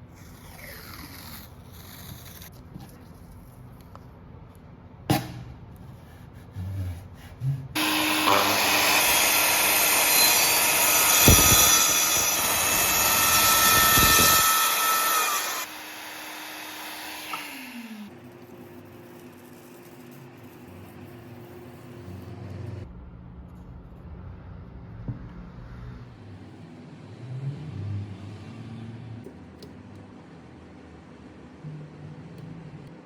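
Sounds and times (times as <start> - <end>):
circular saw cutting wood: 7.8 - 18.2.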